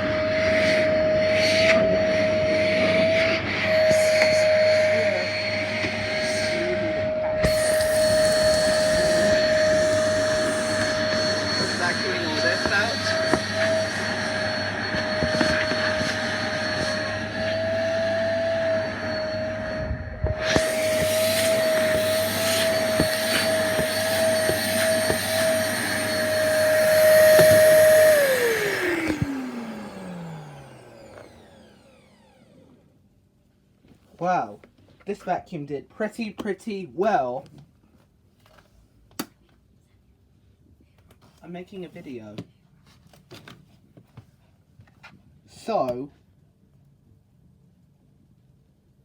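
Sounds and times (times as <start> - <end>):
wet dry vacuum running: 0.0 - 32.9.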